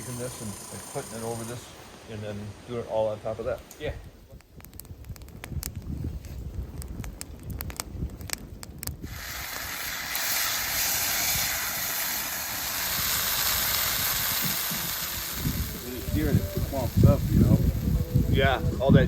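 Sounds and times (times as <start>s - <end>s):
meat sizzling over fire: 0.0s - 4.0s, 4.6s - 19.0s
fire crackling: 0.0s - 19.0s.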